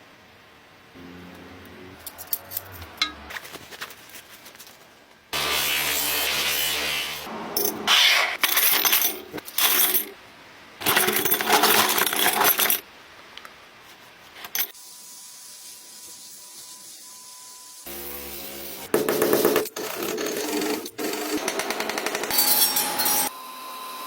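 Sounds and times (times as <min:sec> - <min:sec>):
small metal pieces clinking: 0:10.8 - 0:12.8.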